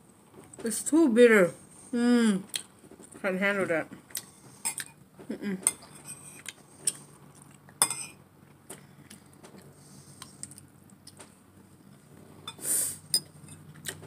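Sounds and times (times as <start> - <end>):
cutlery clinking on dishes: 7.8 - 8.2.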